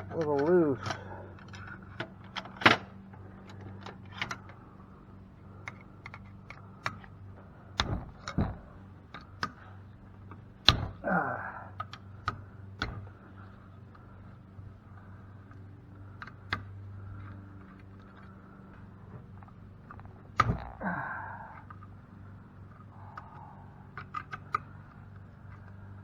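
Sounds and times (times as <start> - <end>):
tools and metal parts clicking: 0.0 - 4.6, 22.6 - 25.9
low steady hum: 0.0 - 26.0.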